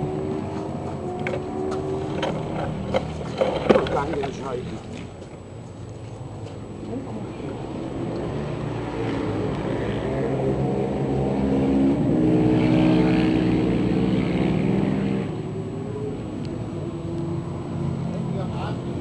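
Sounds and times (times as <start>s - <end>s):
quad engine running: 0.0s - 5.1s.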